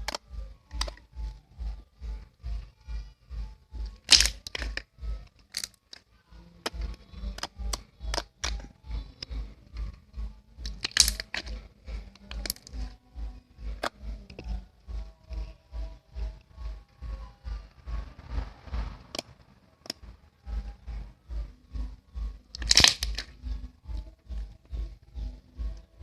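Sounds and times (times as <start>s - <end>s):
background music with low beat: 0.0s - 26.0s
slime crackling pops: 4.1s - 4.8s, 22.6s - 23.3s.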